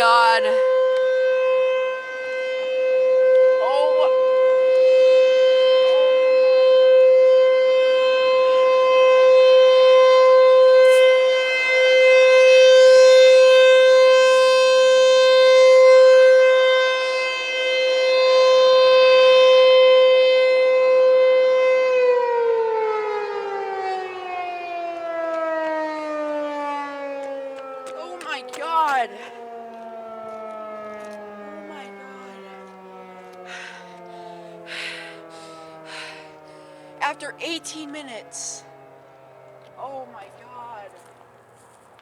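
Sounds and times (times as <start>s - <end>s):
outdoor warning siren: 0.0s - 42.0s.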